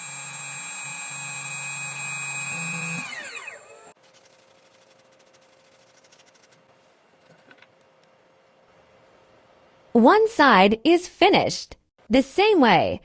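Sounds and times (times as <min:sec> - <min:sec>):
spindle motor whining: 0:00.0 - 0:04.0.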